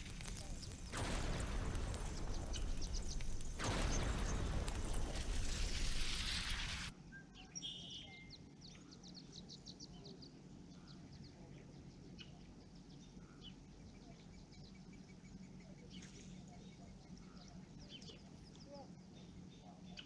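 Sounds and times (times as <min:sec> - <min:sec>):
loud rushing noise: 0:00.0 - 0:06.9
small birds chirping: 0:00.0 - 0:20.0.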